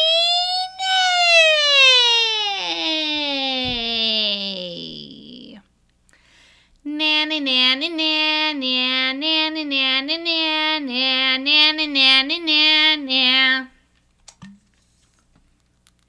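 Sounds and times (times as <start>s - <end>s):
woman singing vocal warm-up: 0.0s - 5.6s, 6.9s - 13.8s.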